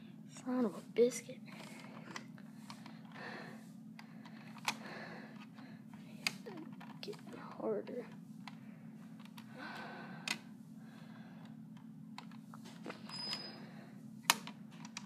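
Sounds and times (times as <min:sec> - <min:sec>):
low hum: 0:00.0 - 0:15.0.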